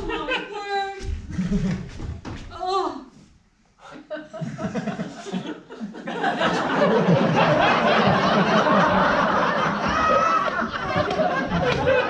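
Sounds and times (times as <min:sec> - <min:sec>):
audience laughing: 0:00.0 - 0:00.7, 0:04.1 - 0:12.0.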